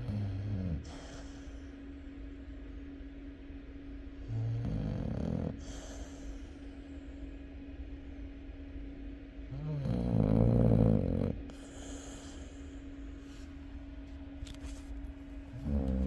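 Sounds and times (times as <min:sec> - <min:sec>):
dog snoring: 0:00.0 - 0:01.7, 0:04.2 - 0:06.5, 0:09.4 - 0:12.8, 0:15.3 - 0:16.0.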